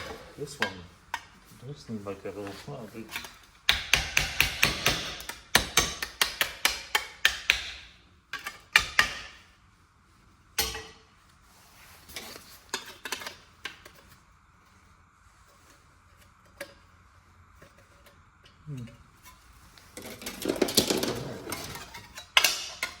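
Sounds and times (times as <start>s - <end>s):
hammer striking metal: 3.7s - 7.9s.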